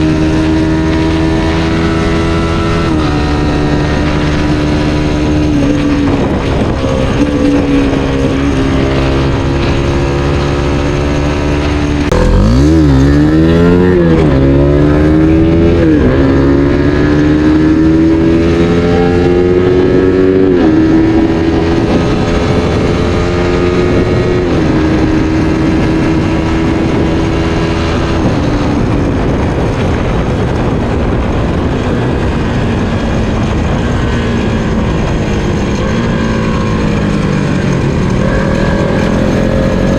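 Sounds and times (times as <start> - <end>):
quickshifter upshifts: 0.0 - 19.4, 34.4 - 39.9
motorcycle engine revving: 0.0 - 39.9.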